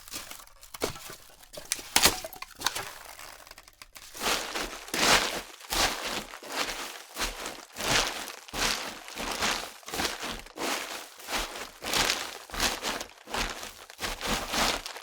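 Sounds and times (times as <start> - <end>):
footsteps crunching: 0.0 - 15.0.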